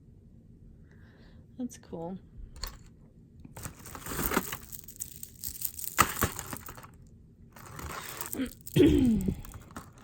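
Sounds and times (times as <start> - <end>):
jewelry rustling and clinking: 3.6 - 10.0.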